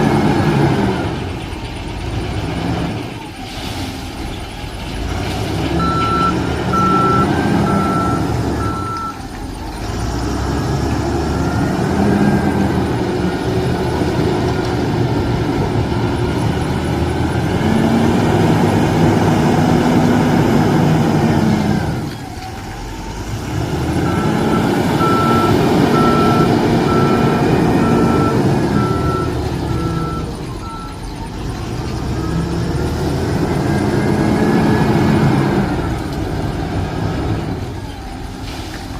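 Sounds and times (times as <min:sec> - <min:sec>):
diesel engine working under load: 0:00.0 - 0:38.9
reversing alarm beeps: 0:05.8 - 0:09.2, 0:24.0 - 0:31.1.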